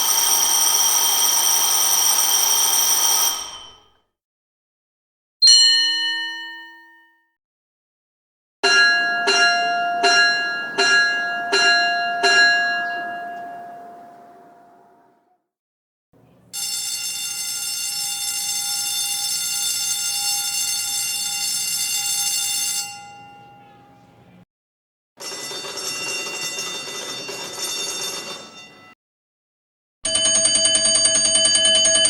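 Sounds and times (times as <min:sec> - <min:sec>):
electric school bell ringing: 0:00.0 - 0:04.0, 0:08.6 - 0:15.2, 0:16.5 - 0:24.4, 0:25.2 - 0:29.0, 0:30.1 - 0:32.0
school bell struck: 0:02.2 - 0:04.0, 0:08.6 - 0:15.1, 0:16.6 - 0:24.3, 0:25.2 - 0:29.0.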